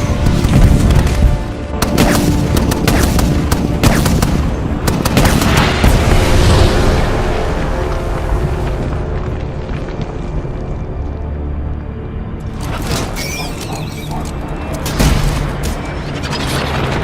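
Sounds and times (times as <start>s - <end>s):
dramatic film score: 0.0s - 17.0s
weapon fire and explosions: 0.0s - 17.0s.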